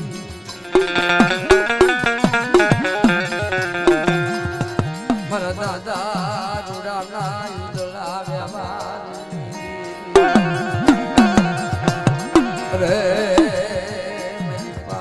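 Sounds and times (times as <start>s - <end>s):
hand drum: 0.0s - 15.0s
plucked strings: 0.0s - 15.0s
wavering melody line: 0.6s - 5.7s, 9.2s - 14.4s.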